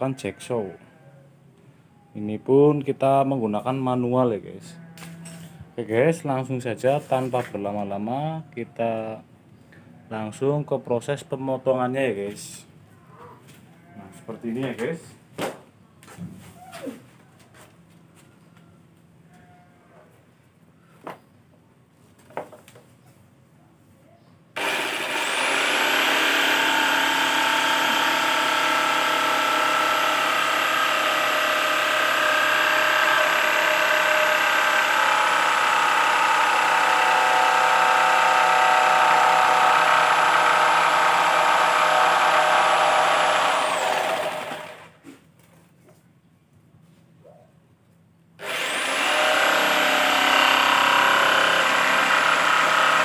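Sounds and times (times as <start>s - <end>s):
electric jigsaw cutting acrylic: 24.6s - 45.0s, 48.4s - 53.0s.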